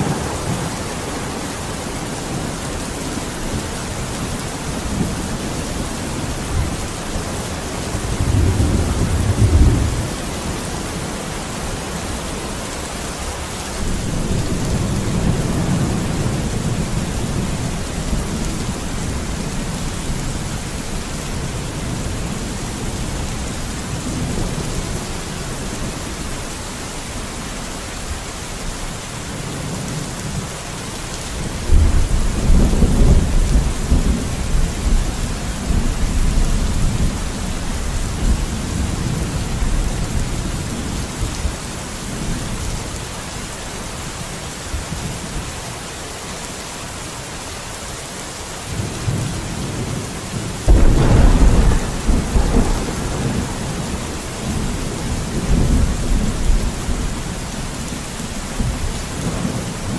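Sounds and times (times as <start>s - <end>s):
rolling thunder: 0.0s - 2.8s, 3.5s - 12.1s, 13.8s - 26.0s, 31.6s - 41.5s, 48.8s - 59.9s
steady rain: 0.0s - 59.9s.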